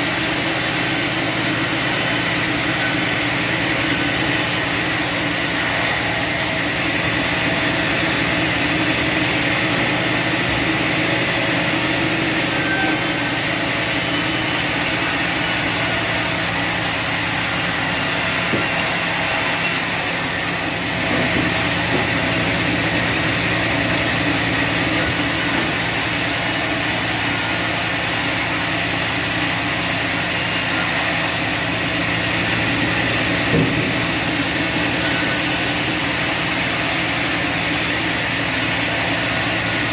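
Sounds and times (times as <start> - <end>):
bandsaw sawmill cutting log: 0.0 - 39.9.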